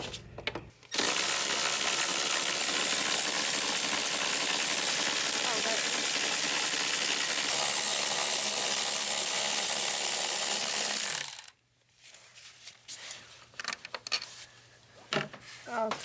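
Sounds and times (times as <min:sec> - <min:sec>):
power tool running with hiss: 0:01.0 - 0:09.1.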